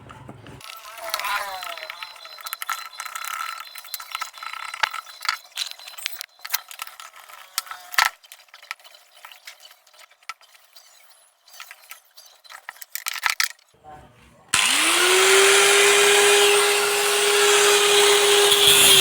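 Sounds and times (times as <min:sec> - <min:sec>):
small metal parts clinking: 0:01.0 - 0:13.7.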